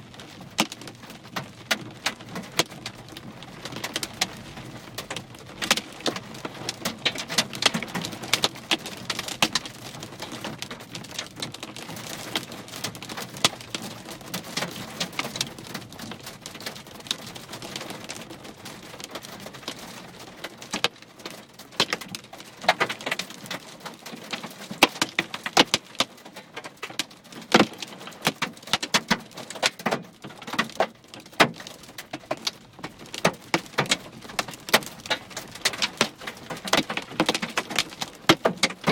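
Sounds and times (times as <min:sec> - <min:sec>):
hailstones clattering: 0:19.1 - 0:38.9.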